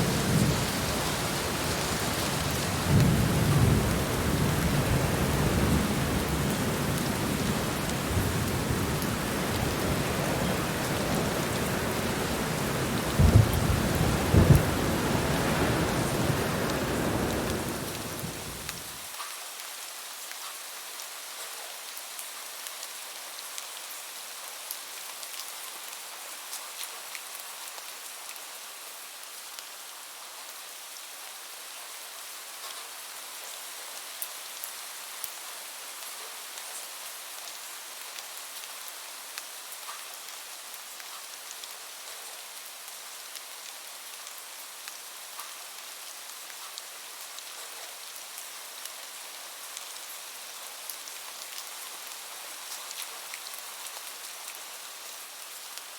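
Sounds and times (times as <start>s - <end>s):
loud thunder claps: 0.0s - 18.8s
thunder rumble: 0.0s - 18.9s
heavy rain: 0.0s - 19.2s.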